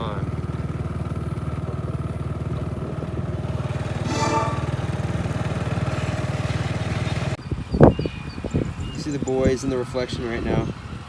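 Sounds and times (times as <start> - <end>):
motorbike engine running: 0.0 - 7.4
short horn tone: 4.0 - 5.3.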